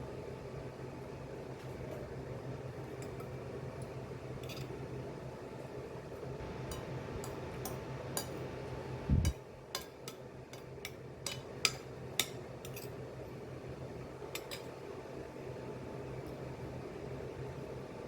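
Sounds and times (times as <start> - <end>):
steady hum: 0.0 - 18.0
dishes and utensils clinking: 14.3 - 14.7.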